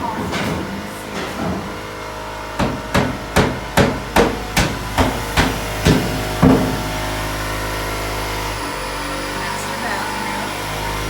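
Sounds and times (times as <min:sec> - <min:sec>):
hammer striking: 0:02.6 - 0:06.9.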